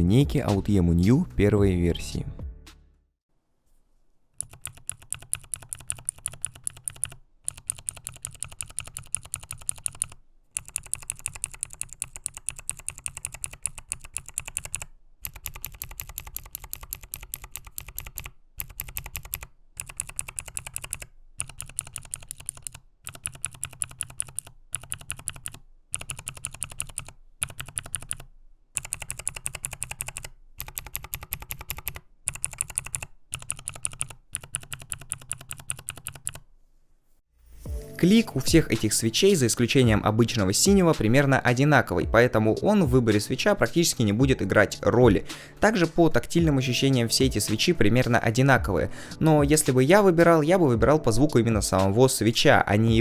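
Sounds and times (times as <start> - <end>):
mechanical keyboard key clicks: 4.4 - 36.4.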